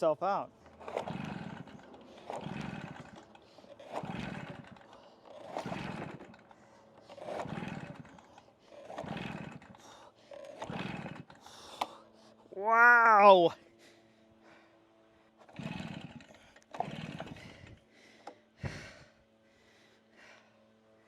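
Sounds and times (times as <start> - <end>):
pull-start cord whirring: 0.5 - 12.2, 15.4 - 19.1.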